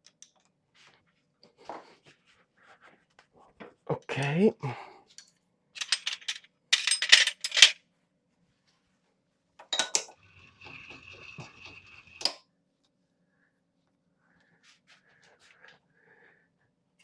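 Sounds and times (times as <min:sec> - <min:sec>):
metal tools clinking: 0:05.8 - 0:07.8.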